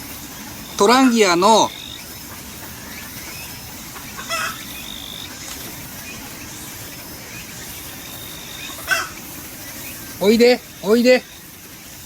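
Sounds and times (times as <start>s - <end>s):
chicken clucking: 2.2s - 11.1s.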